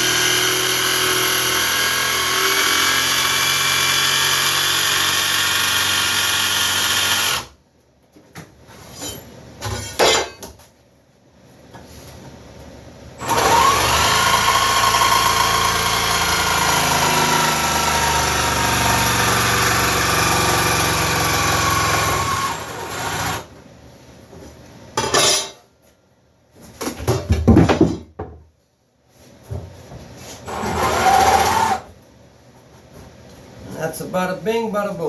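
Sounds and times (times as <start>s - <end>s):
power tool motor cutting: 0.0s - 7.5s, 13.2s - 23.5s, 30.5s - 31.9s.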